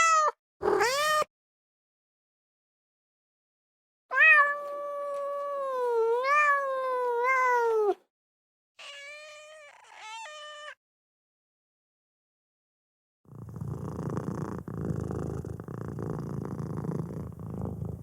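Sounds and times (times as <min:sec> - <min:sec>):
kitten meowing: 0:00.0 - 0:01.3, 0:08.8 - 0:10.8.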